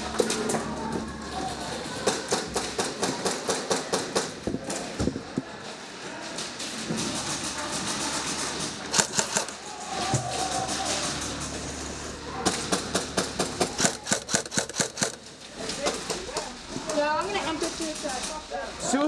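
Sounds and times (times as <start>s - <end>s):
airsoft guns popping: 8.9s - 9.6s, 12.5s - 15.3s.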